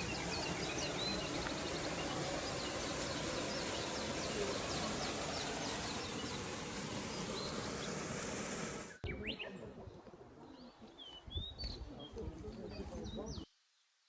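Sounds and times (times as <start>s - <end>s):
waterfall rushing: 0.0s - 9.0s
small birds chirping: 0.0s - 14.0s.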